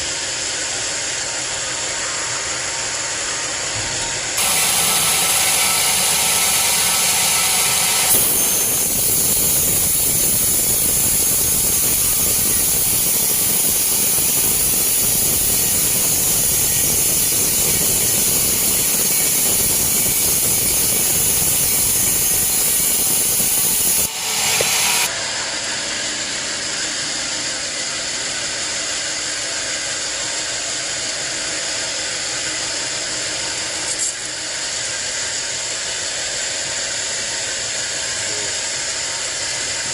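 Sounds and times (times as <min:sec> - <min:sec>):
machine running: 0:00.0 - 0:30.0
band saw cutting log: 0:04.4 - 0:25.2.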